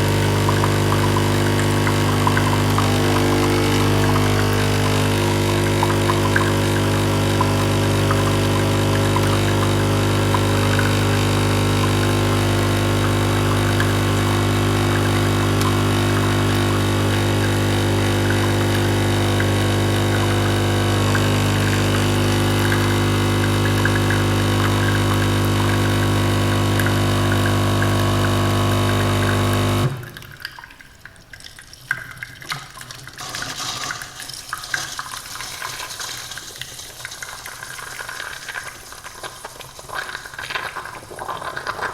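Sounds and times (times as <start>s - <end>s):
coffee machine pump humming: 0.0s - 30.2s.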